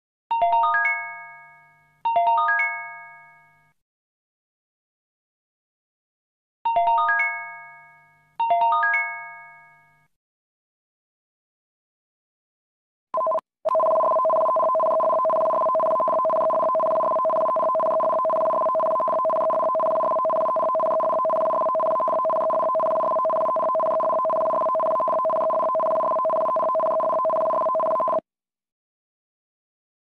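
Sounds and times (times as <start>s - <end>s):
warbling data tones: 13.9s - 28.2s.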